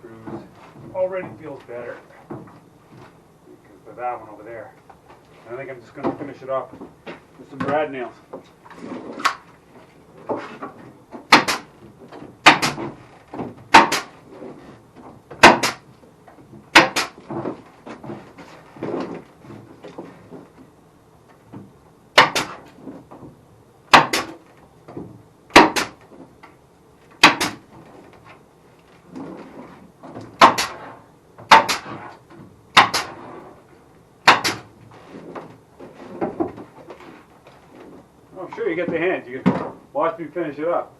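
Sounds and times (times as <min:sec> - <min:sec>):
nail gun firing into wood: 0:11.3 - 0:11.7, 0:12.4 - 0:12.9, 0:13.7 - 0:14.2, 0:15.4 - 0:15.9, 0:16.7 - 0:17.2, 0:22.2 - 0:22.7, 0:23.9 - 0:24.4, 0:25.5 - 0:26.0, 0:27.2 - 0:27.7, 0:30.4 - 0:32.1, 0:32.7 - 0:33.2, 0:34.2 - 0:34.7.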